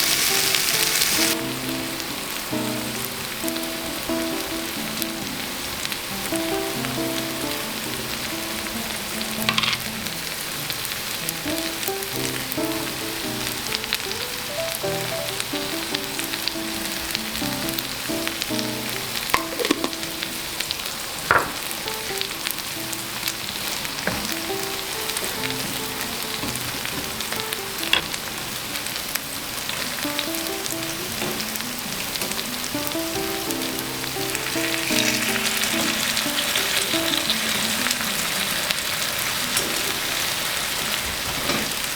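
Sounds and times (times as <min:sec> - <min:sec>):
food sizzling in a frying pan: 0:00.0 - 0:41.9.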